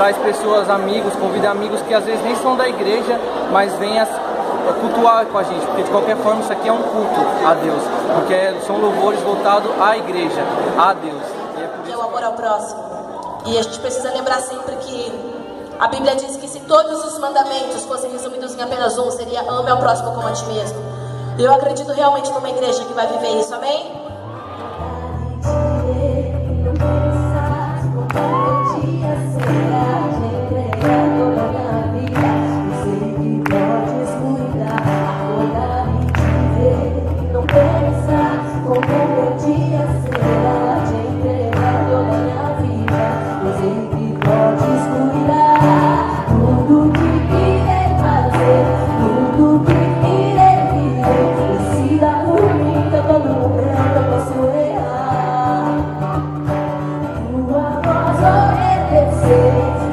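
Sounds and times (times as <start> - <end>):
worship singing: 24.5 - 56.1.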